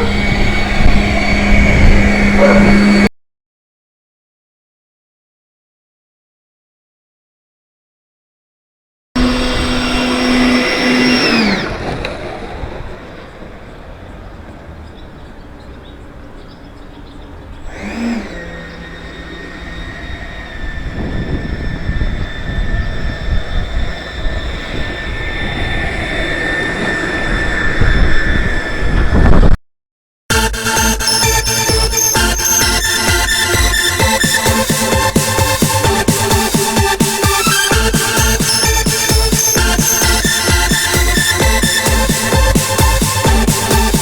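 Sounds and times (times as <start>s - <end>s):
model jet turbine whining: 0.0s - 3.1s, 9.2s - 14.9s, 17.5s - 29.5s, 30.3s - 44.0s
wind noise rumbling: 0.0s - 3.1s, 19.8s - 29.6s.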